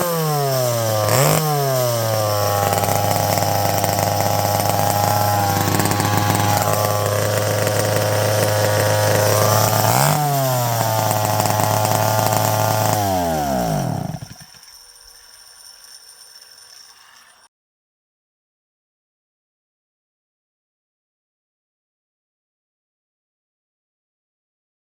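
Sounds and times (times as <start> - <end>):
chainsaw idling: 0.0 - 17.1.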